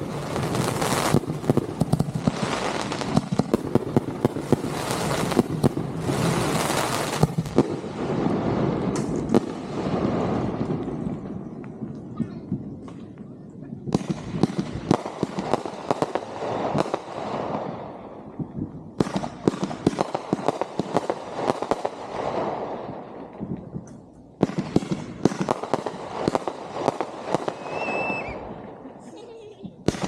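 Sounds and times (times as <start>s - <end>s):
fireworks bangs and crackle: 0.0s - 30.0s.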